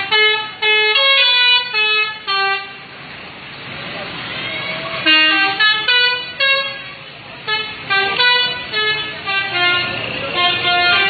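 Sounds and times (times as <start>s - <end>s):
bus musical horn: 0.0s - 2.9s, 5.0s - 11.0s.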